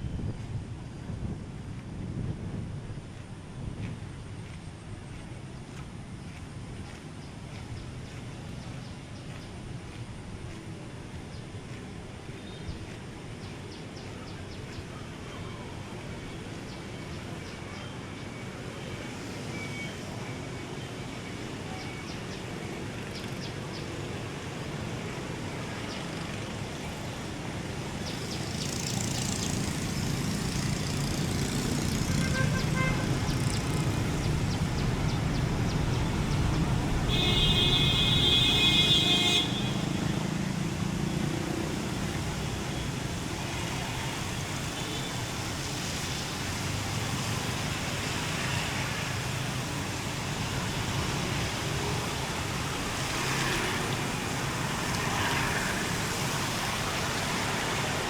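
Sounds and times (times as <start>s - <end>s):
vehicle passing: 24.6s - 58.0s
car horn: 32.1s - 33.2s, 37.1s - 40.1s.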